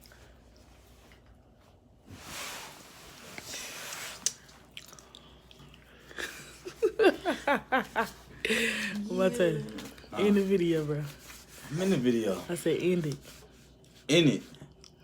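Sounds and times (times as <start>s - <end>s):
chewing and crunching: 4.2s - 6.2s.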